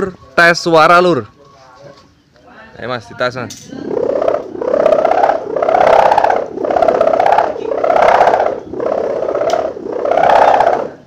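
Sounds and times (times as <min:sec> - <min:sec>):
kite hummer buzzing drone: 0:03.7 - 0:11.0.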